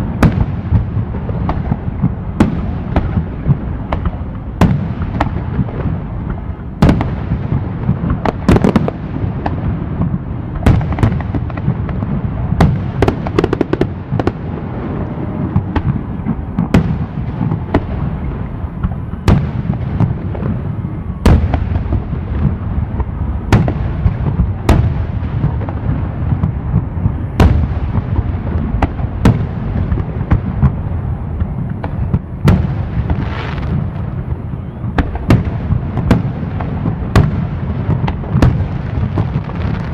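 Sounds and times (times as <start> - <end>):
fireworks booming and cracking: 0.0 - 39.9.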